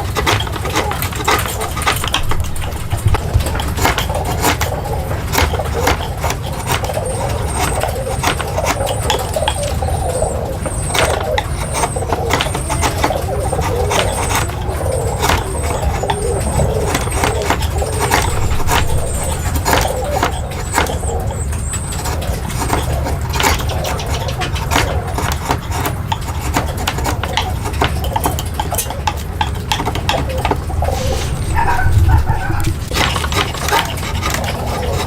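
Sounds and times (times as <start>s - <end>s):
sharp knocks and clicks: 0.0s - 35.0s
low machine rumble: 1.5s - 6.2s, 30.1s - 33.0s.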